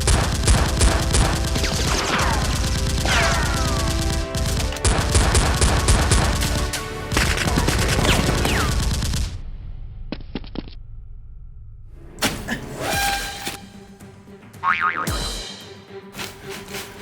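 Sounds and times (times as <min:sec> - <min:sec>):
automatic gunfire bursts: 0:00.0 - 0:09.0.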